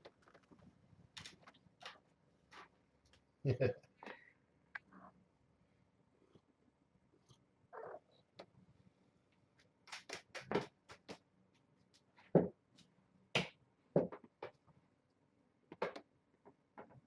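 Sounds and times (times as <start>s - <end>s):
kittens' paws tapping: 9.6s - 11.3s.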